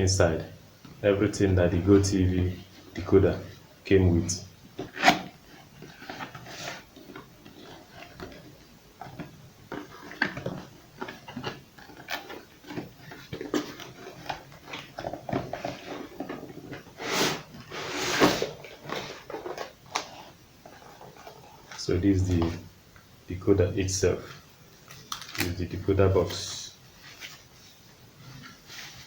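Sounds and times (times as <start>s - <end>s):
packaging rustling: 4.7s - 22.6s, 24.2s - 27.8s.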